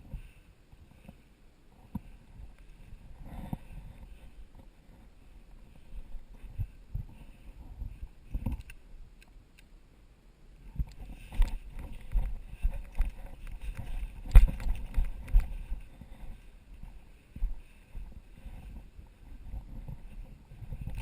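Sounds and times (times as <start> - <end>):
gear rustling: 10.8 - 21.0
footsteps: 11.0 - 21.0.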